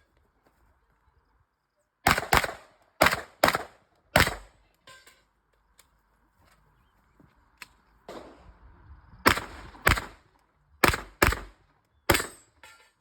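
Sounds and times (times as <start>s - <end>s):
gunshots: 2.1s - 4.5s, 8.1s - 8.5s, 9.2s - 12.4s.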